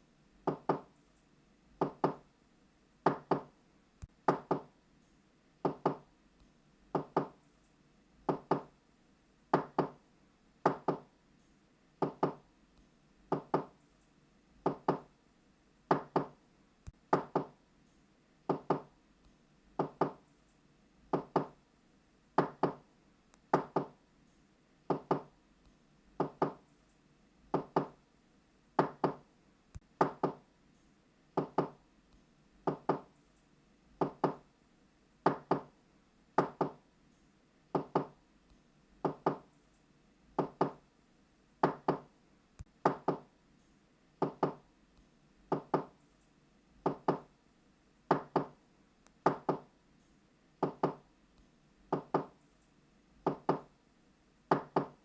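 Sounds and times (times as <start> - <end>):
knocking on a door: 0.5 - 0.9, 1.8 - 2.2, 3.0 - 3.5, 4.3 - 4.7, 5.6 - 6.1, 6.9 - 7.4, 8.3 - 8.7, 9.5 - 10.0, 10.6 - 11.1, 12.0 - 12.4, 13.3 - 13.7, 14.6 - 15.1, 15.9 - 16.4, 17.1 - 17.6, 18.5 - 18.9, 19.8 - 20.2, 21.1 - 21.6, 22.4 - 22.8, 23.5 - 24.0, 24.9 - 25.3, 26.2 - 26.6, 27.5 - 28.0, 28.8 - 29.2, 30.0 - 30.4, 31.4 - 31.8, 32.7 - 33.1, 34.0 - 34.4, 35.2 - 35.7, 36.4 - 36.8, 37.7 - 38.2, 39.0 - 39.5, 40.4 - 40.8, 41.6 - 42.1, 42.8 - 43.3, 44.2 - 44.6, 45.5 - 45.9, 46.8 - 47.3, 48.1 - 48.6, 49.2 - 49.7, 50.6 - 51.0, 51.9 - 52.3, 53.2 - 53.7, 54.5 - 55.0.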